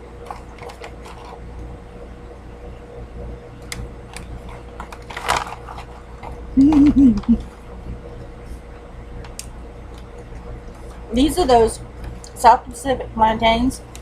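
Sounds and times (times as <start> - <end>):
steady electrical hum: 0.0 - 14.0
snack packaging crinkling: 0.2 - 1.4, 4.1 - 7.3.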